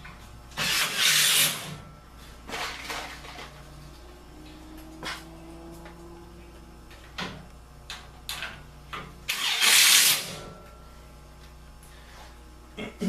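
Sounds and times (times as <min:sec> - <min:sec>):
cordless drill driving screw: 0:09.3 - 0:10.3.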